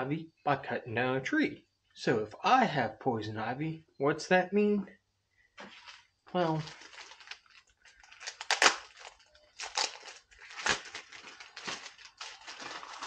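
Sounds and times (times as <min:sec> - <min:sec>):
gloves crinkling and rustling: 0:05.6 - 0:13.0.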